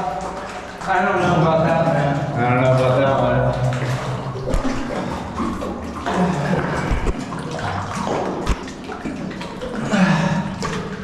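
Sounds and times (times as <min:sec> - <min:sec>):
person wading through water: 0:00.0 - 0:11.0.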